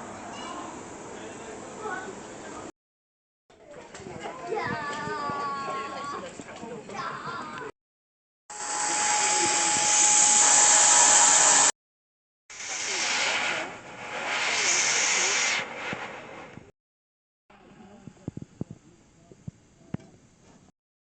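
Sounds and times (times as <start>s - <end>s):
steam hissing: 8.5s - 11.7s, 12.5s - 16.7s.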